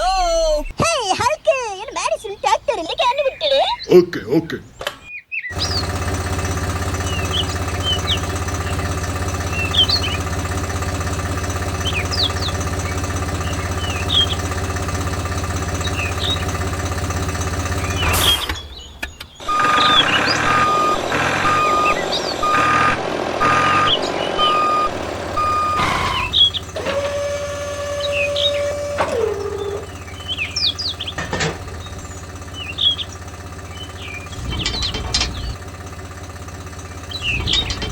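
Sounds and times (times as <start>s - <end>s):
small motor humming: 5.5s - 18.6s, 19.4s - 35.6s, 36.8s - 37.9s
rough machine running noise: 5.5s - 37.9s
reversing beeper: 19.4s - 29.9s.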